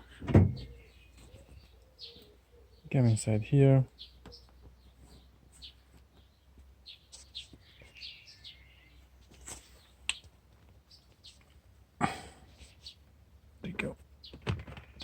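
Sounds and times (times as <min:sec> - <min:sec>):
faint bird chirps: 0:00.6 - 0:10.3.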